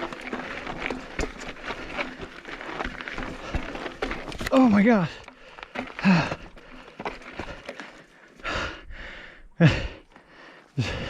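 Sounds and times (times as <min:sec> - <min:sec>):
man breathing hard: 0:05.2 - 0:11.0.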